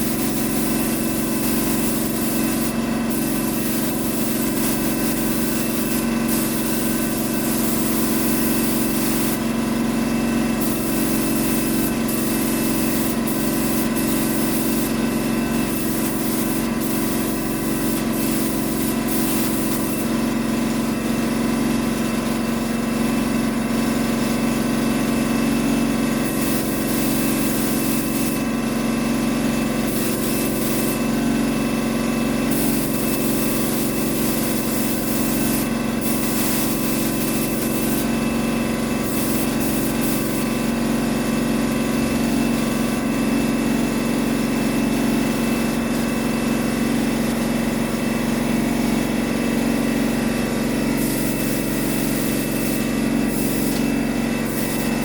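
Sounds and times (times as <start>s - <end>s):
spray gun hissing: 0.0s - 9.6s, 10.6s - 20.2s, 26.2s - 28.5s, 29.8s - 31.1s, 32.5s - 38.3s, 39.0s - 40.6s, 51.0s - 55.0s
motor hum: 0.0s - 43.5s, 45.3s - 55.0s.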